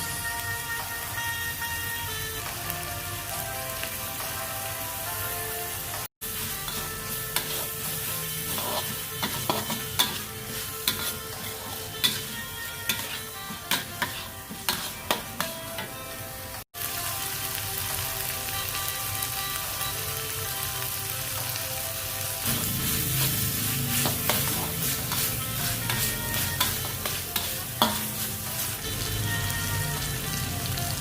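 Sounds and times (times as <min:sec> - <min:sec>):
food sizzling in hot oil: 0:00.0 - 0:31.0
utensil scraping a pan: 0:06.5 - 0:16.0, 0:23.2 - 0:28.8.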